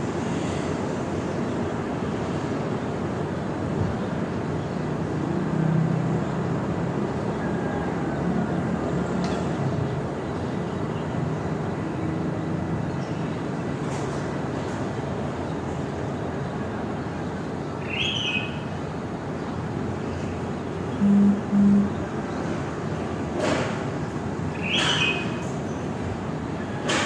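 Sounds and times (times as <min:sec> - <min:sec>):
low engine-like drone: 0:15.6 - 0:26.9
faint bird chirps: 0:17.8 - 0:18.8, 0:20.9 - 0:22.5.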